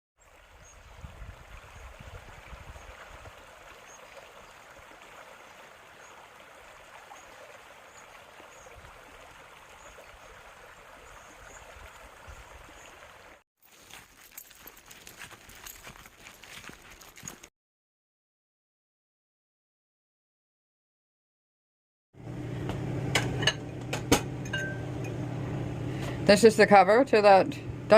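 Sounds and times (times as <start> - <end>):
stream water rushing: 0.2 - 13.4.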